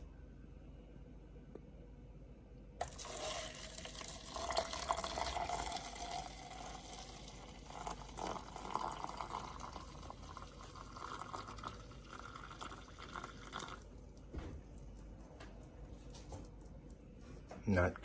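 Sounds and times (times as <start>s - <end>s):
liquid pouring into container: 2.8s - 16.9s.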